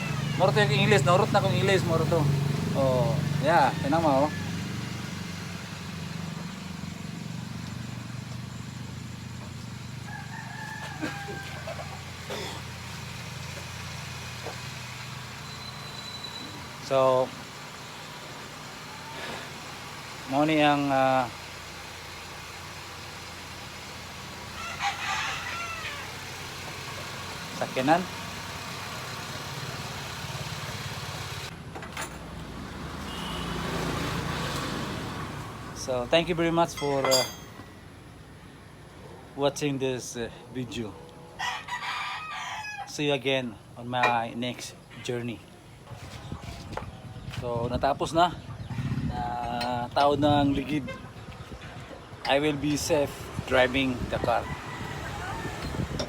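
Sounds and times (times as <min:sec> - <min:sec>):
motor vehicle engine idling: 0:00.0 - 0:41.4
rooster crowing: 0:02.8 - 0:05.7, 0:09.4 - 0:12.2, 0:24.3 - 0:27.0, 0:41.2 - 0:43.0, 0:54.0 - 0:56.0.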